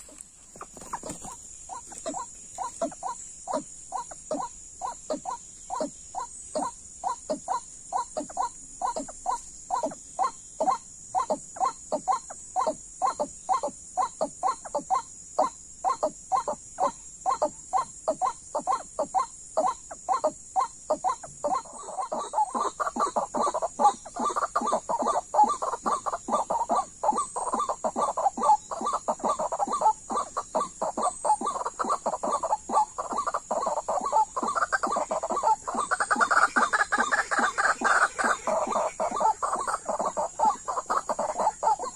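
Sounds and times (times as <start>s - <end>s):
waterhen calling repeated notes: 21.2s - 41.9s.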